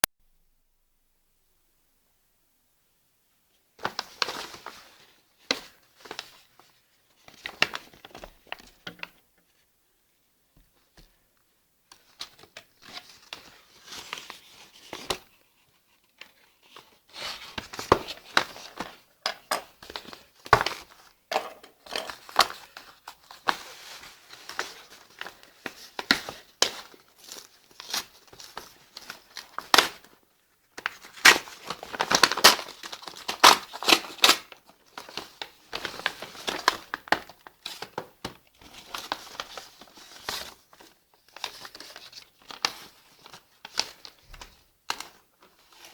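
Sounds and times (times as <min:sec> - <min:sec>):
packaging crinkling and rustling: 0:16.1 - 0:45.9.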